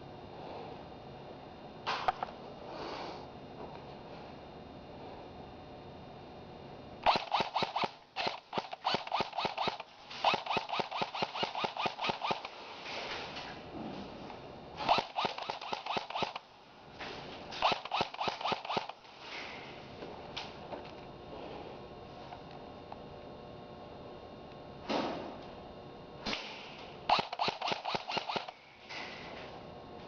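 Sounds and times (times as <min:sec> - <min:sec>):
airsoft guns firing bursts: 0:07.0 - 0:12.5, 0:14.8 - 0:16.4, 0:17.6 - 0:19.0, 0:27.1 - 0:28.6.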